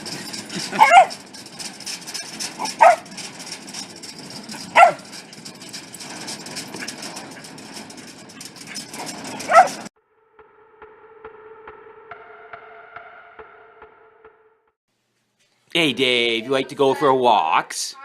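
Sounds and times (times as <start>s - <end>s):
dog barking: 0.8s - 1.2s, 2.6s - 3.1s, 4.7s - 5.1s, 9.3s - 9.9s.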